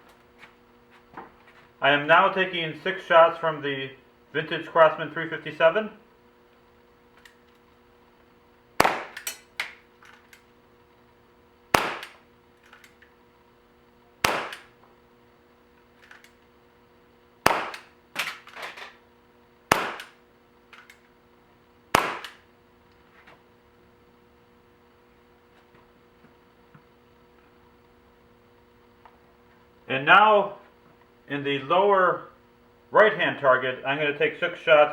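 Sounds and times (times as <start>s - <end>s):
pellet revolver shots: 8.8s - 9.8s, 11.7s - 13.0s, 14.2s - 14.8s, 17.4s - 18.5s, 19.7s - 20.2s, 21.9s - 22.4s.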